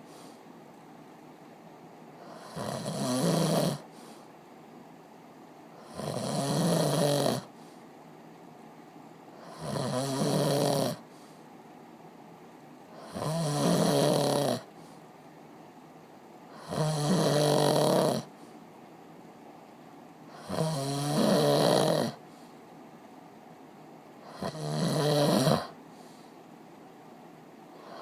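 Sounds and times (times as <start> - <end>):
person snoring: 2.2 - 3.9, 5.8 - 7.5, 9.4 - 11.0, 12.9 - 14.7, 16.5 - 18.3, 20.3 - 22.2, 24.2 - 25.8, 27.8 - 28.0.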